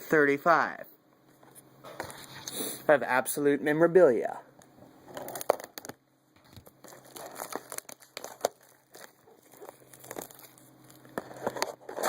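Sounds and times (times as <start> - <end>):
packaging crinkling and tearing: 5.1 - 12.0.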